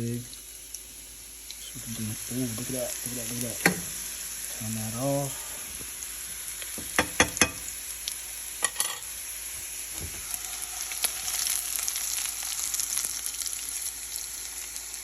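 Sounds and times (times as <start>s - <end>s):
chicken sizzling in a frying pan: 0.0s - 15.0s.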